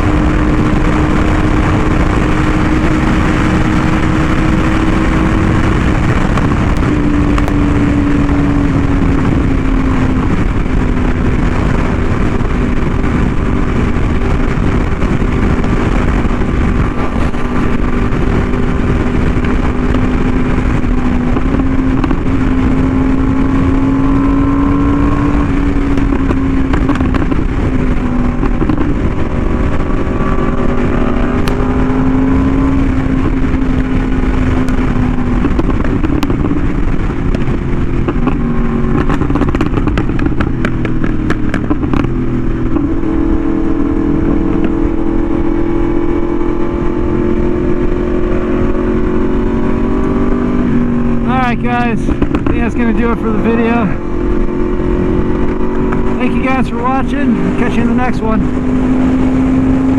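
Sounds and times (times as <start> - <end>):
motorcycle engine cruising: 0.0 - 59.9
wind noise: 0.0 - 59.9.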